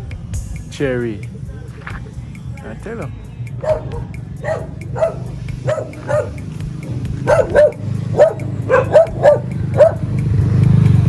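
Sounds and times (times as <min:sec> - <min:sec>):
dog barking: 0:03.6 - 0:10.2.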